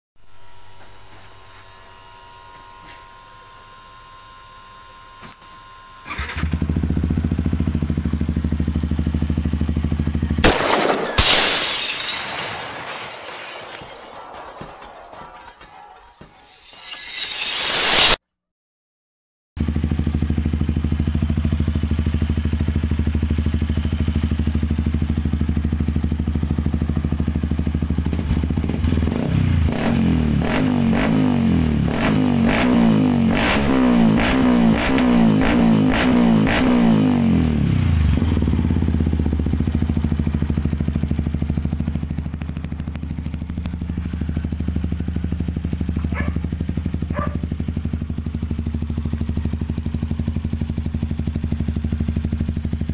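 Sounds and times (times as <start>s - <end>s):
motorcycle engine idling and revving: 5.9s - 10.6s, 19.6s - 52.9s.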